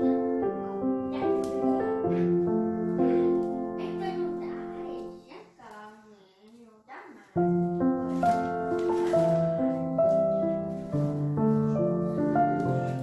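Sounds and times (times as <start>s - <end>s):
piano-like keyboard music: 0.0s - 5.2s, 7.4s - 13.0s.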